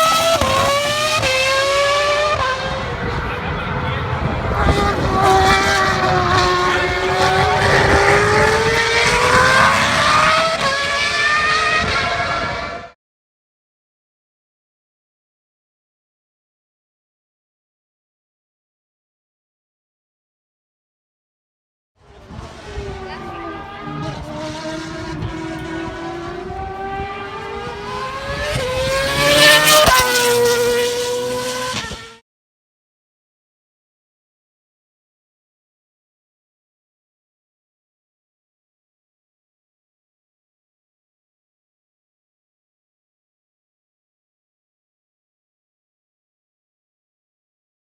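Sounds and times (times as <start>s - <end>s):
race car engine at high revs: 0.0s - 13.0s, 22.0s - 32.2s.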